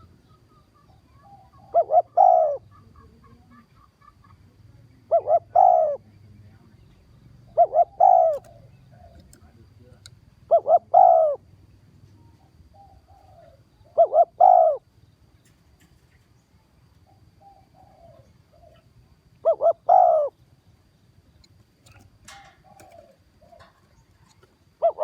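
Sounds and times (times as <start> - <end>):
dove cooing: 0.0 - 6.3, 7.4 - 11.6, 12.2 - 14.9, 17.1 - 20.4, 21.8 - 25.0.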